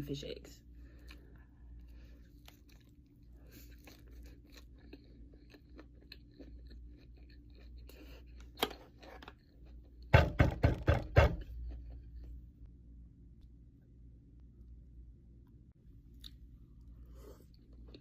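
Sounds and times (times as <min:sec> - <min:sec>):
loud knocks: 0:10.1 - 0:11.4.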